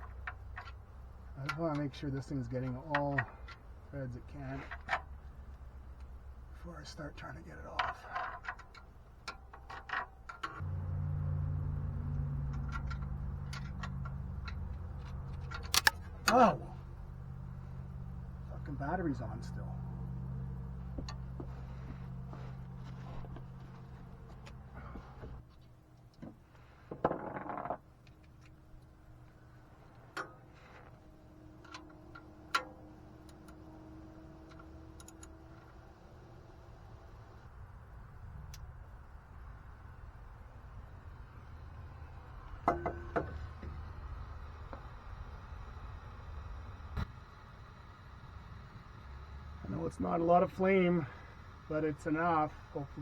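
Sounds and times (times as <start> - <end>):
steady low hum: 0.0 - 26.9, 27.8 - 53.0
wrench clicking on bolt: 15.4 - 16.0.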